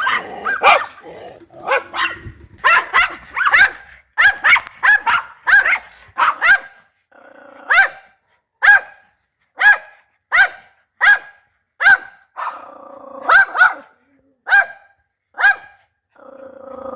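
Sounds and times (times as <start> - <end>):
dog barking: 0.0 - 1.0, 1.6 - 6.8, 7.7 - 9.0, 9.6 - 15.8
dog growling: 0.0 - 2.6, 16.2 - 16.9.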